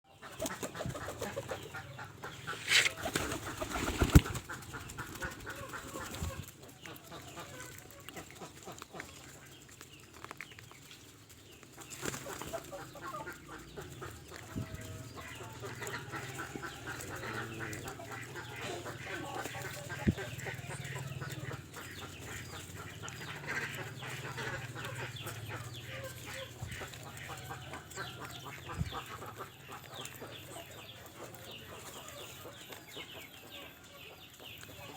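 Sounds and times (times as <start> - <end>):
pigeons cooing: 0.2 - 9.1, 12.0 - 32.9
pigeon wings flapping: 2.7 - 6.4.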